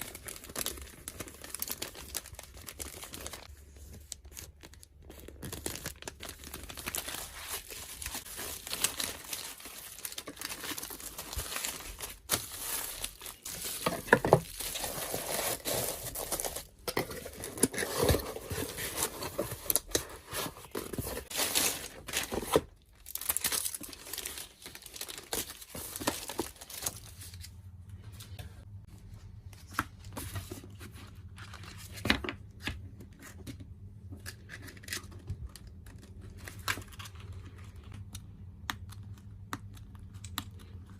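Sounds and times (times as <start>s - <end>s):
paper and plastic crinkling: 0.0s - 28.3s.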